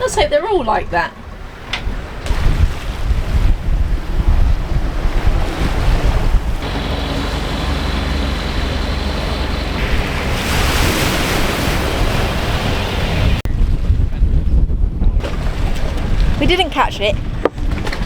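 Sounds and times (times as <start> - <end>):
water rushing along boat hull: 0.0 - 14.1, 15.2 - 18.0
wind rumbling on microphone: 0.0 - 18.0.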